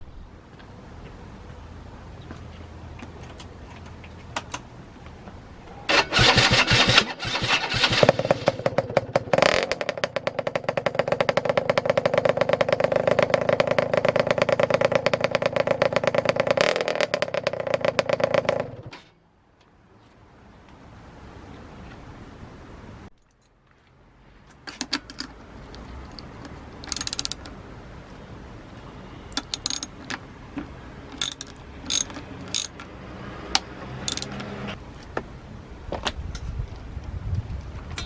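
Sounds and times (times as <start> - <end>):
two-stroke engine revving and idling: 5.9 - 18.9, 31.2 - 34.8.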